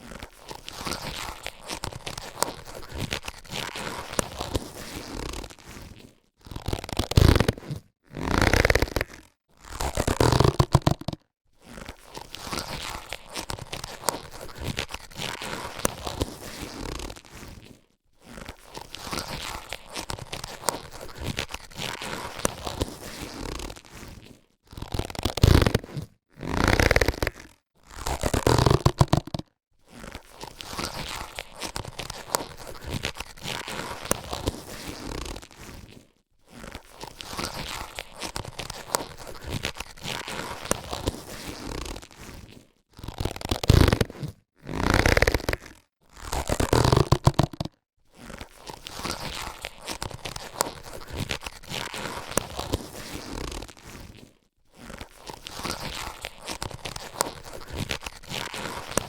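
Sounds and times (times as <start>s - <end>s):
latex gloves rustling: 0.1s - 7.8s, 26.6s - 59.0s.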